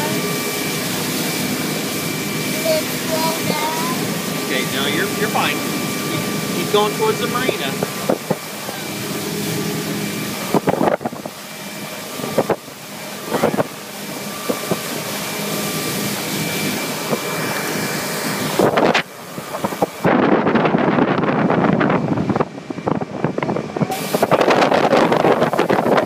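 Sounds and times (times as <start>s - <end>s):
motorboat engine running: 0.0s - 26.0s
wind rushing over microphone: 0.0s - 26.0s.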